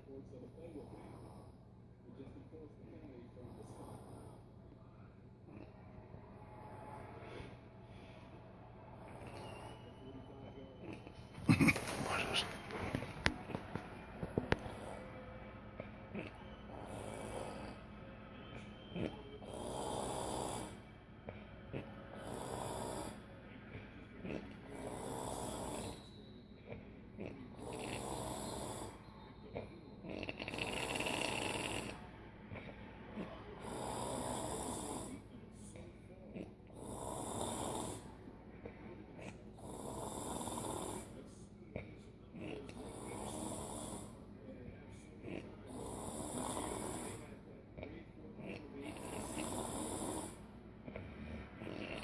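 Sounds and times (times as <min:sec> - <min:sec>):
woman snoring: 0:16.1 - 0:17.8, 0:19.0 - 0:20.8, 0:21.8 - 0:23.2, 0:24.3 - 0:26.0, 0:27.6 - 0:29.0, 0:30.1 - 0:32.0, 0:33.2 - 0:35.2, 0:36.8 - 0:38.1, 0:39.6 - 0:41.1, 0:45.8 - 0:47.2, 0:48.9 - 0:52.0.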